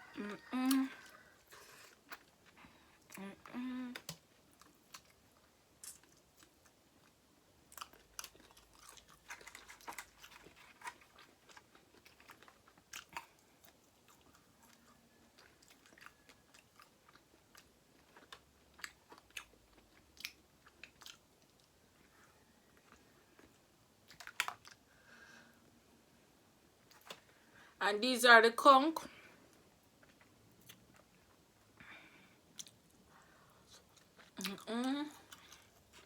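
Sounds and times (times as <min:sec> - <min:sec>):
person chewing and biting: 0:03.9 - 0:14.8, 0:15.4 - 0:21.7.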